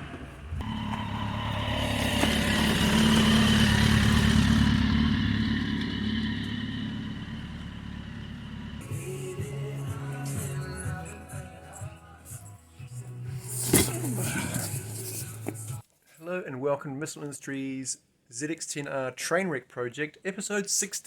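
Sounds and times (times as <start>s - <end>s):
motorcycle engine running: 0.0s - 11.1s.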